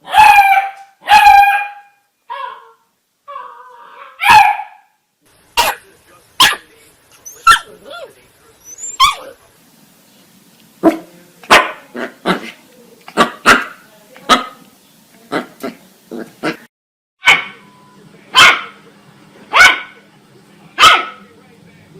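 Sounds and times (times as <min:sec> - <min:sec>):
puppy yapping: 0:00.0 - 0:04.9, 0:05.6 - 0:05.8, 0:06.4 - 0:06.6, 0:07.2 - 0:09.4, 0:17.2 - 0:17.6, 0:19.5 - 0:20.0, 0:20.8 - 0:21.2.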